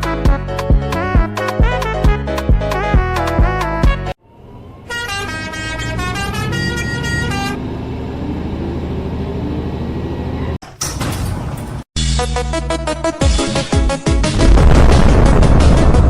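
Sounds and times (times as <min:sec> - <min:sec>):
large vehicle engine running: 0:04.2 - 0:11.9
multi-tone vehicle horn: 0:04.8 - 0:07.7.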